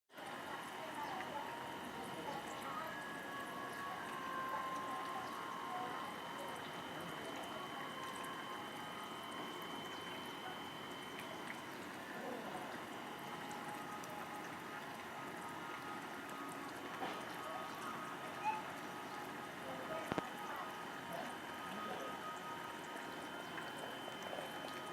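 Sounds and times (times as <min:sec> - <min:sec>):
thin high steady tones: 0:00.2 - 0:24.9
trickling water: 0:00.2 - 0:24.9.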